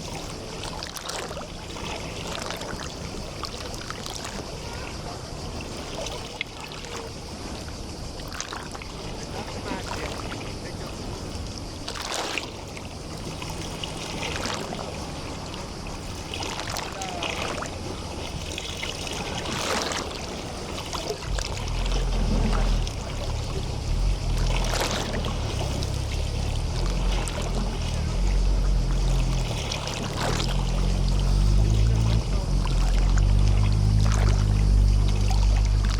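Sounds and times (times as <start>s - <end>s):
small waves lapping on shore: 0.0s - 35.9s
low rumble: 21.1s - 35.9s.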